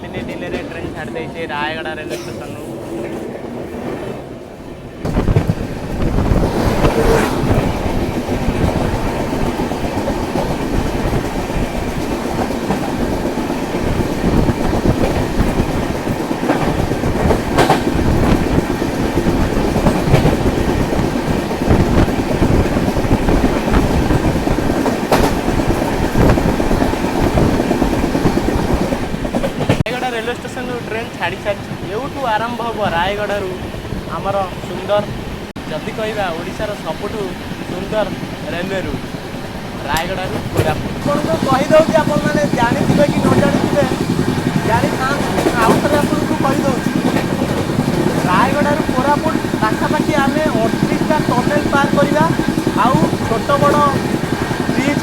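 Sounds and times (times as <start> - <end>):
train wheels rumbling on track: 0.0 - 55.0
wheels clacking over rail joints: 5.0 - 31.1, 35.8 - 55.0.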